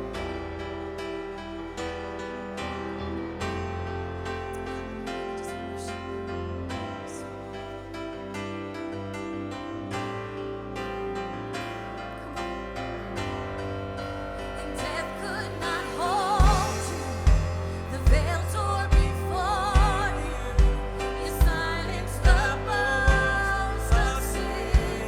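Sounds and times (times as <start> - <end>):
sustained keyboards: 0.0 - 25.0
person singing with vibrato: 14.4 - 25.0
bass guitar and kick drum: 16.4 - 25.0.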